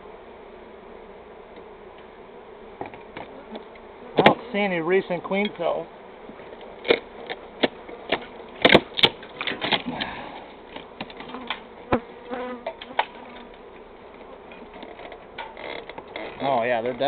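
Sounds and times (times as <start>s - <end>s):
honeybee colony buzzing: 0.0s - 17.0s
clicks and knocks from hive: 2.8s - 4.4s, 6.3s - 17.0s.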